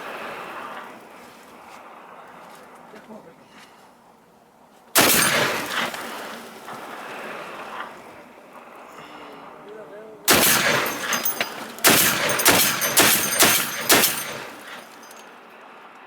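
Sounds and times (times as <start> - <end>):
rifle shots with echo: 5.0 - 6.3, 10.3 - 15.2.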